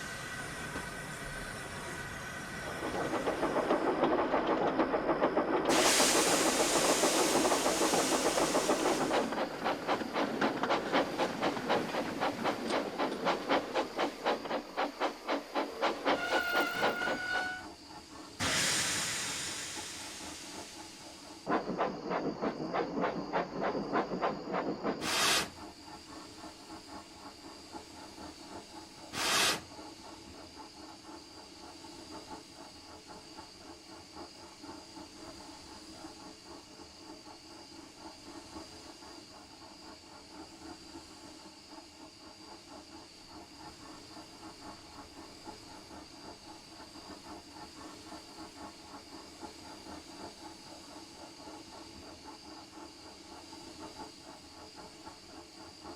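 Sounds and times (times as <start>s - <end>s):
steam bursts: 0.0s - 26.3s, 28.5s - 31.2s
steam hissing: 0.0s - 55.9s
steam locomotive chuffing: 0.0s - 55.9s.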